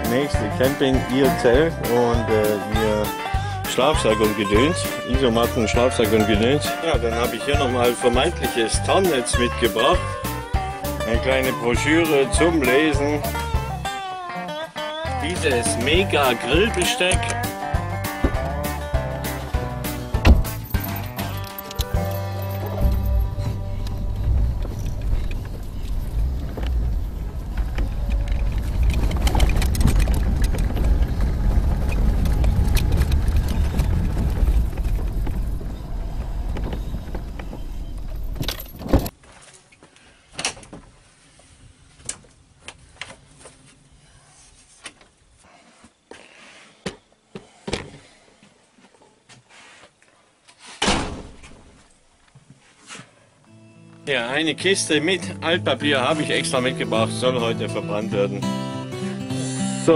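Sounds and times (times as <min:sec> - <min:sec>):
loud low rumble with rattling: 0:22.8 - 0:39.1.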